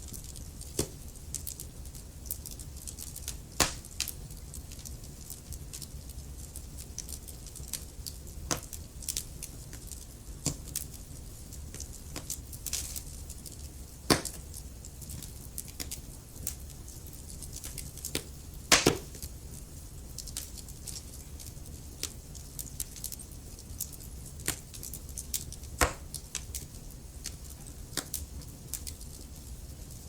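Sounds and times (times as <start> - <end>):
low rumble of flames: 0.0 - 30.0
wood fire crackling and popping: 0.0 - 30.0.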